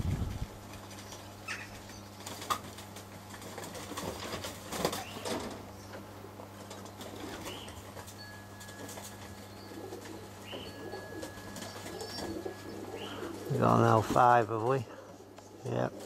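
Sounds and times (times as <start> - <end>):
steady low hum: 0.0 - 16.0
pigeon wings flapping: 0.2 - 5.7, 6.5 - 10.3, 10.9 - 15.4.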